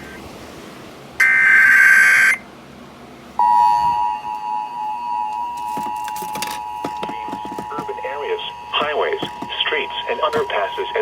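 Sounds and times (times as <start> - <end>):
two-tone attention signal: 3.4 - 10.2.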